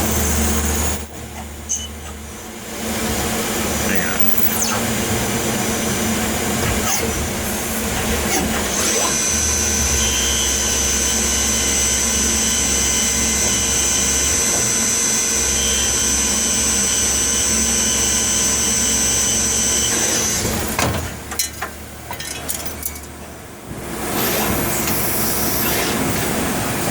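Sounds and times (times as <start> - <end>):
machine hum: 0.0 - 26.9
high-pitched lathe whine: 8.7 - 20.5
machine clicks and knocks: 19.9 - 23.2.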